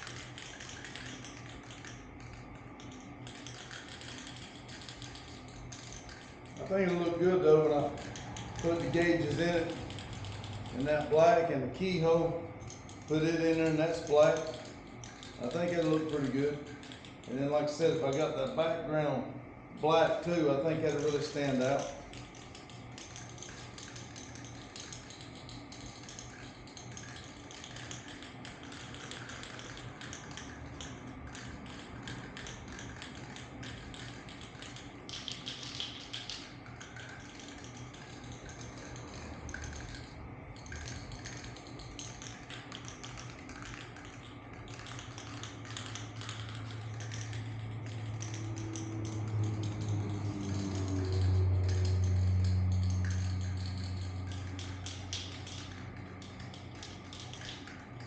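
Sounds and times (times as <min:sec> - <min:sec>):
light clicking and tapping: 0:12.6 - 0:18.6, 0:20.7 - 0:58.0
low hum: 0:36.7 - 0:57.8.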